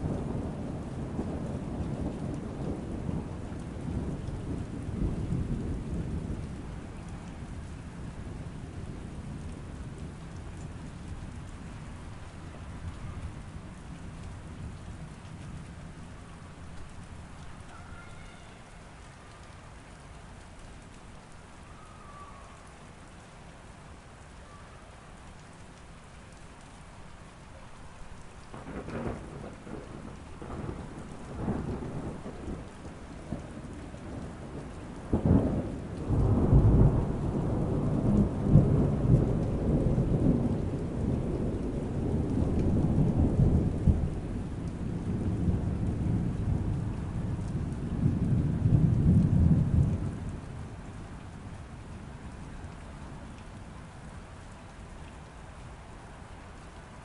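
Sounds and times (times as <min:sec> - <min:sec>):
thunder cracking and rumbling: 0:00.0 - 0:11.5, 0:28.5 - 0:51.4
steady rain: 0:00.0 - 0:57.0.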